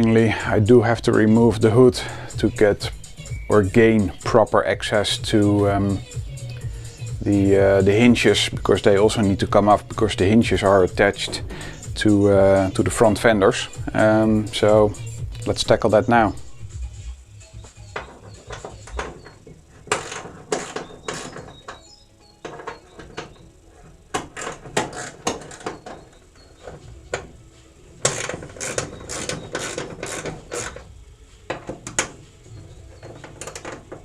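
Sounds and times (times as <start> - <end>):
tools knocking on metal: 17.9 - 27.3, 31.5 - 34.0
socket ratchet clicking: 28.0 - 30.9.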